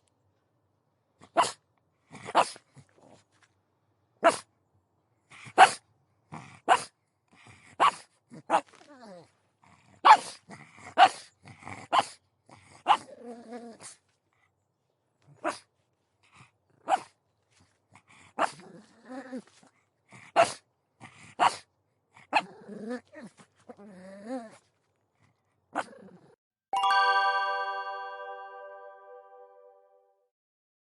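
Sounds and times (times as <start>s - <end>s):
dog barking in sharp yaps: 1.4s - 1.6s, 4.2s - 4.4s, 5.6s - 5.8s, 6.7s - 6.9s, 10.0s - 10.4s, 21.4s - 21.6s
bright chime ringing: 26.7s - 30.2s.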